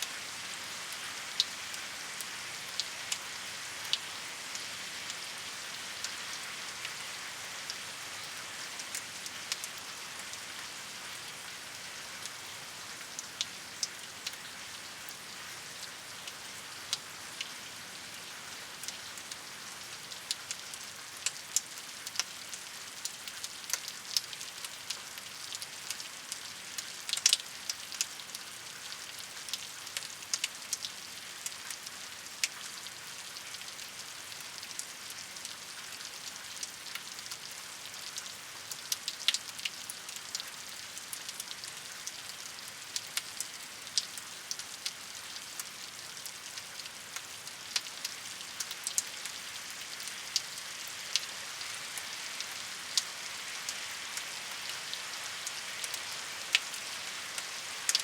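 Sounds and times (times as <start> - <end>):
steady rainfall: 0.0 - 58.0
raindrops ticking on hard surface: 8.8 - 10.7, 18.2 - 58.0.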